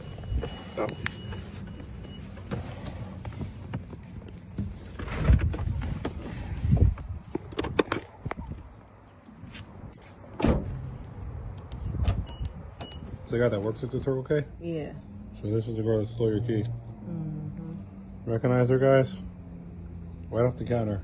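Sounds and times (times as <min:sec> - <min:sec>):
car doors and locks clunking: 0:10.3 - 0:10.9, 0:11.9 - 0:13.1.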